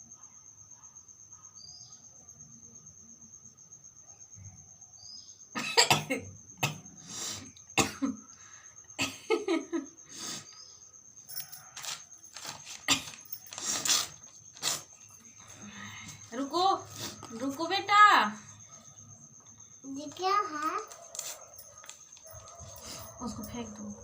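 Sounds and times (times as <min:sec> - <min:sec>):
person coughing: 0:05.6 - 0:06.8, 0:07.8 - 0:08.2.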